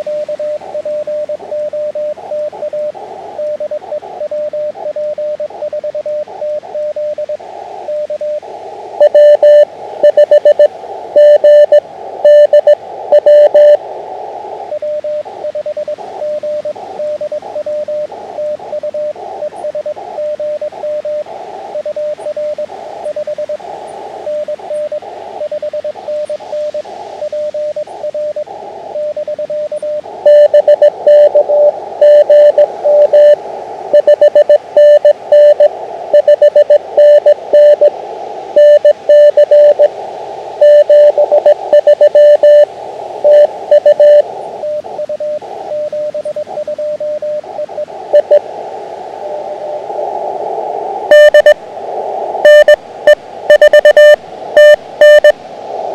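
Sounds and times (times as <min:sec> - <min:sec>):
receiver hiss: 0:00.0 - 0:55.9
loud harsh morse code tone: 0:09.0 - 0:13.8, 0:30.3 - 0:33.4, 0:34.0 - 0:37.9, 0:38.6 - 0:39.9, 0:40.6 - 0:44.2, 0:48.2 - 0:48.4, 0:51.1 - 0:51.6, 0:52.4 - 0:55.4
morse code tone: 0:09.0 - 0:13.8, 0:29.6 - 0:37.9, 0:38.6 - 0:39.9, 0:40.6 - 0:46.4, 0:48.1 - 0:48.4, 0:51.1 - 0:51.6, 0:52.4 - 0:55.4.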